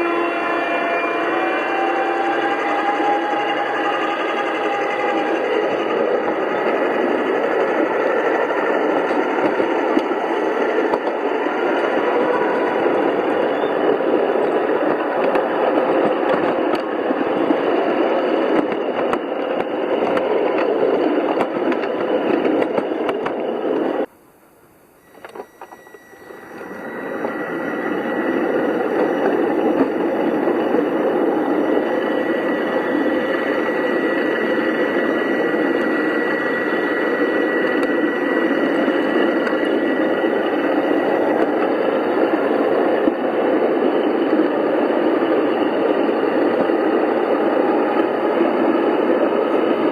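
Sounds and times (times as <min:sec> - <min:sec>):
model train rumbling on track: 0:00.0 - 0:24.1, 0:25.0 - 0:49.9
faint high tone: 0:24.4 - 0:39.7.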